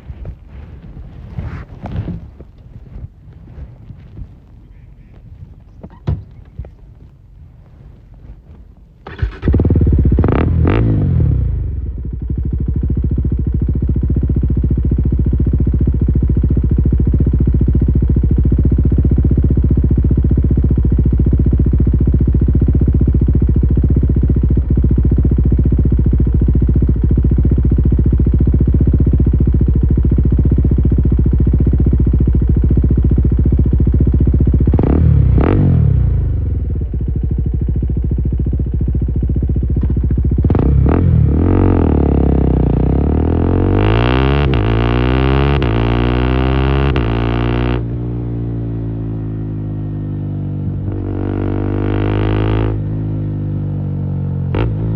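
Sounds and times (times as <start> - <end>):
loud motorcycle engine revving: 9.1 - 13.3, 28.1 - 37.0, 39.8 - 48.0, 50.8 - 53.2, 54.5 - 54.9.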